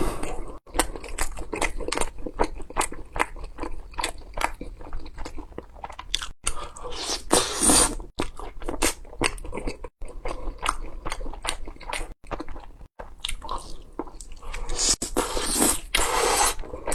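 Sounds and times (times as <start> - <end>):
crunching bites and chewing: 0.6 - 6.9.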